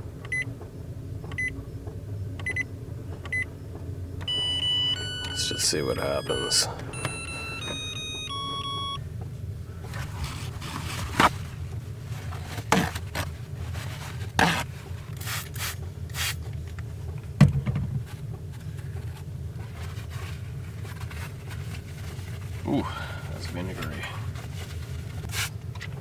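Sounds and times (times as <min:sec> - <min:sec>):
short electronic beep: 0:04.3 - 0:09.0
rubbing and scraping: 0:09.9 - 0:15.1.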